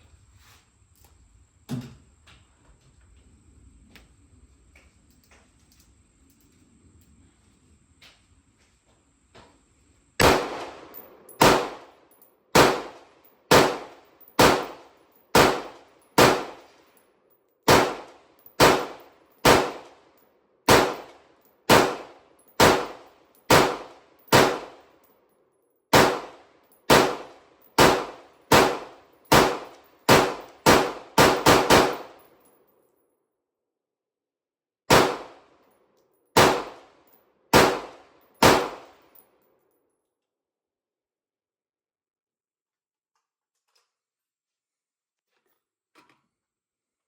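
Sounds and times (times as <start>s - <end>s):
rifle shots: 10.2s - 16.7s, 17.7s - 20.0s, 20.7s - 24.9s, 25.9s - 32.2s, 34.9s - 35.4s, 36.4s - 39.0s.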